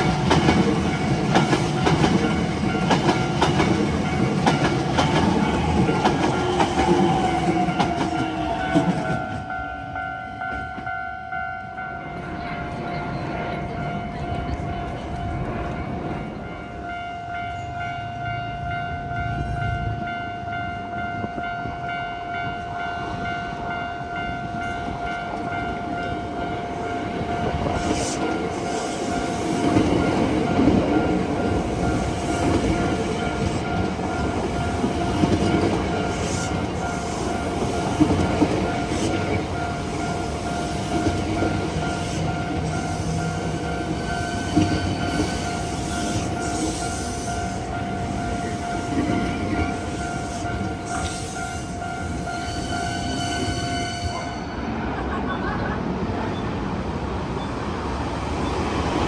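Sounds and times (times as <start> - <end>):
train wheels clicking on rail joints: 0.0 - 9.6, 24.4 - 54.2
electric train passing: 0.0 - 59.0.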